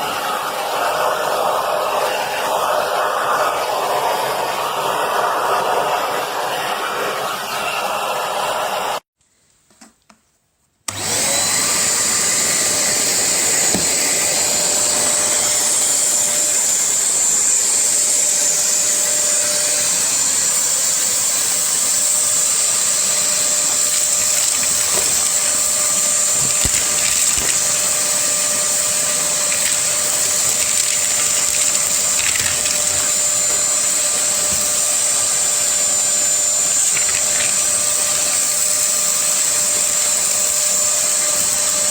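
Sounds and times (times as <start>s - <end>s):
vacuum cleaner motor whining: 0.0s - 9.0s, 10.9s - 41.9s.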